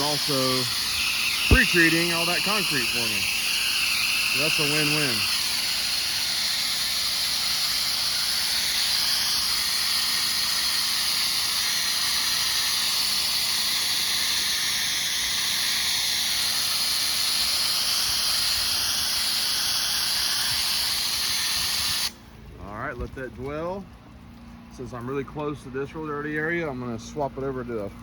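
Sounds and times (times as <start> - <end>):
pressure washer spraying: 0.0 - 22.2.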